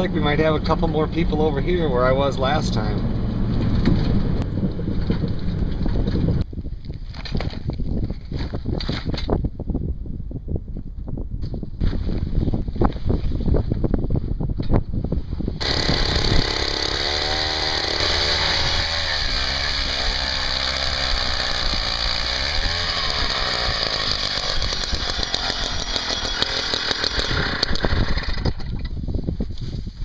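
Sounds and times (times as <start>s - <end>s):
ice auger engine drilling: 15.6s - 28.8s.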